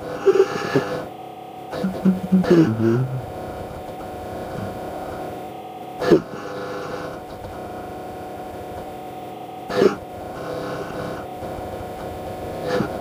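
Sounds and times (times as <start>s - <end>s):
steady humming drone: 0.0s - 8.3s
grunt-like creature calls: 1.8s - 3.3s.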